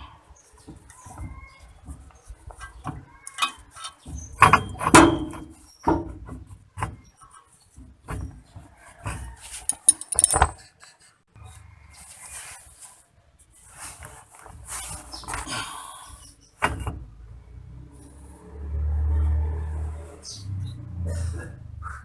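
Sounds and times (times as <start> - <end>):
metal tools clinking and knocking: 9.6 - 10.7.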